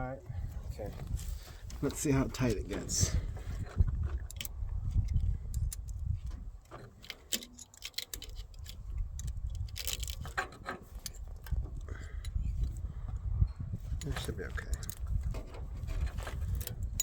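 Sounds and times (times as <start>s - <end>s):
steady low rumble: 0.0s - 6.7s, 8.4s - 17.0s
metal tools clicking and clinking: 3.1s - 12.8s, 14.0s - 15.2s.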